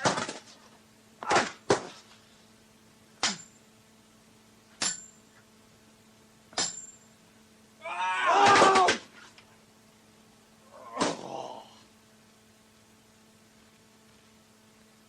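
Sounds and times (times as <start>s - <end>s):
sharp metallic clashes ringing: 4.8s - 5.2s, 6.6s - 7.1s.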